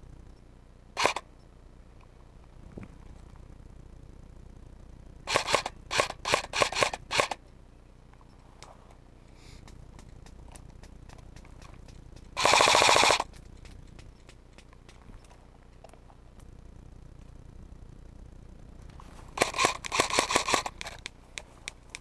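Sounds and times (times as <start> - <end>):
airsoft guns firing bursts: 1.0 - 1.2, 5.3 - 7.4, 10.0 - 14.7, 19.4 - 21.1.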